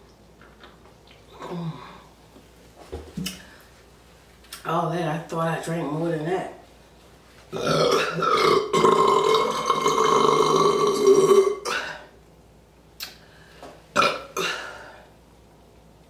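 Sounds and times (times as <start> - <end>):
woman burping loudly: 7.5 - 12.1, 14.0 - 15.0.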